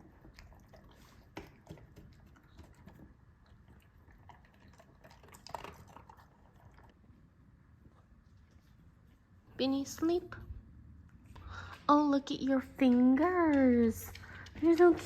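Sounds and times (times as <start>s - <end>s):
dog chewing with mouth clicks: 0.0s - 9.1s.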